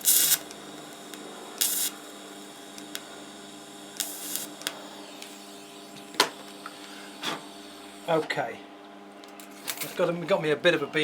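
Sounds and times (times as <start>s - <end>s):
welding arc hissing: 0.0s - 8.2s
electrical hum: 0.0s - 11.0s.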